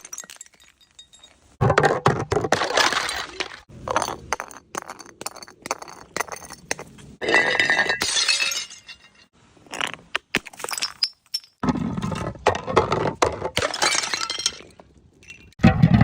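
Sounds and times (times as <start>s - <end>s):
glass shattering crash: 7.2s - 9.3s.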